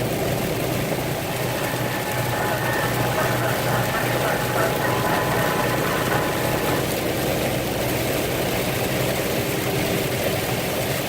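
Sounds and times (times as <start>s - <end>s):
diesel engine idling: 0.0s - 7.9s
constant hiss: 0.7s - 7.5s.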